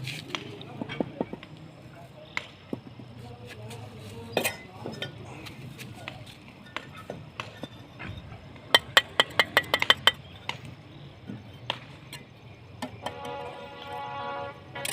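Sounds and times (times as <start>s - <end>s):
trowel clinking on bricks: 3.7s - 5.4s, 6.0s - 10.6s.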